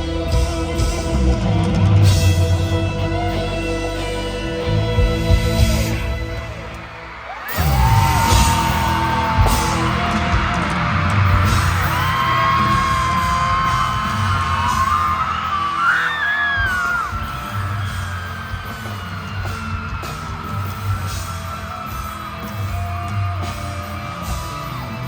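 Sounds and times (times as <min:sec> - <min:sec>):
crowd screaming and cheering: 0:00.0 - 0:25.0
live concert music: 0:00.0 - 0:25.0
high-pitched screams: 0:05.9 - 0:25.0.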